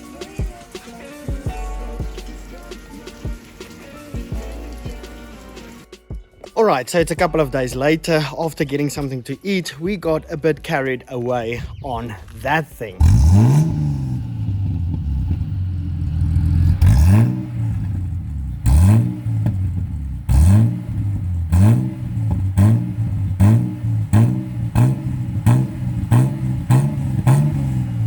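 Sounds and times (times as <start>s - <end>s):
car engine idling and revving: 13.0s - 28.0s.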